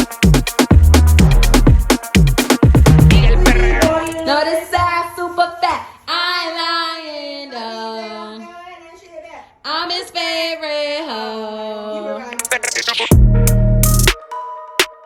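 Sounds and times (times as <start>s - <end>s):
high voice singing: 3.0s - 4.4s.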